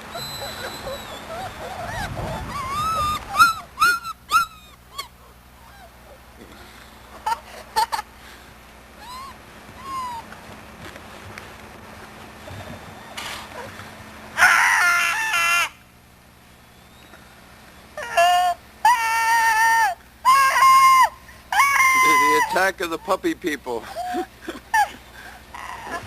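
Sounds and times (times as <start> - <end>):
puppies whining and yelping: 0.0 - 6.3, 9.0 - 10.4, 12.4 - 13.8, 17.9 - 22.6, 24.0 - 26.0.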